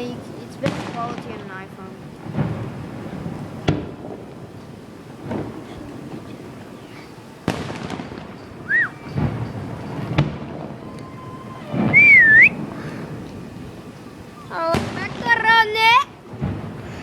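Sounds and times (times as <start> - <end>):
firework bangs: 0.0 - 17.0
firework whistles: 6.7 - 13.3.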